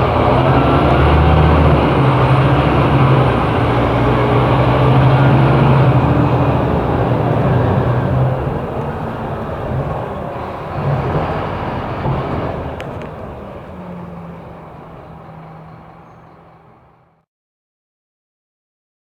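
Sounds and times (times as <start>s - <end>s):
bus engine running: 0.0s - 17.2s.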